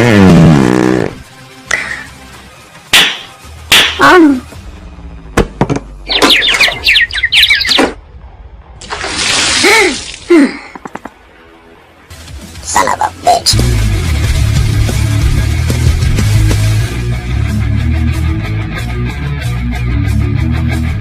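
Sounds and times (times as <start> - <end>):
quick chirping tones: 6.1 - 8.0.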